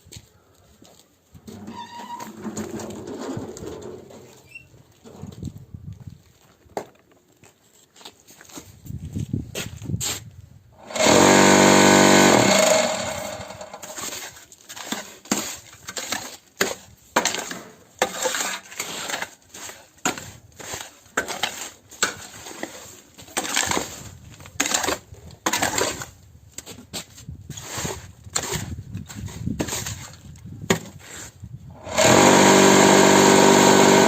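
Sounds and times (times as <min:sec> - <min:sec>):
vibrator motor humming loudly: 0:10.8 - 0:14.0, 0:31.8 - 0:34.0.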